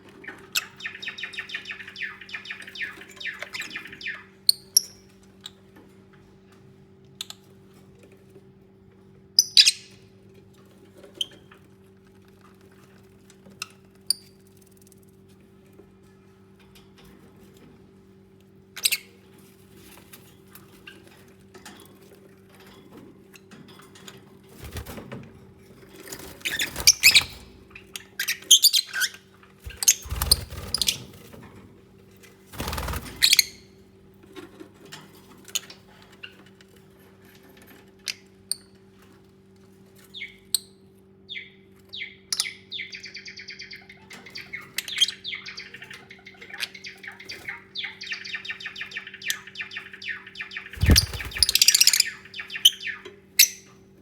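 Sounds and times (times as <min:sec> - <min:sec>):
birds chirping and chattering: 0:00.0 - 0:05.7, 0:26.0 - 0:31.4, 0:32.6 - 0:33.7, 0:41.3 - 0:53.7
birds fluttering and rustling: 0:00.0 - 0:40.4, 0:44.1 - 0:54.0
steady low hum: 0:50.6 - 0:52.4.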